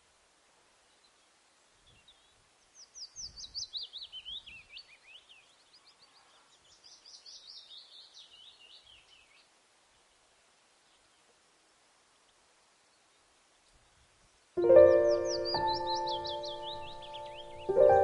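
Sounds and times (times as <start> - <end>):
faint steady hiss: 0.0 - 18.0
songbird chirping: 0.1 - 18.0.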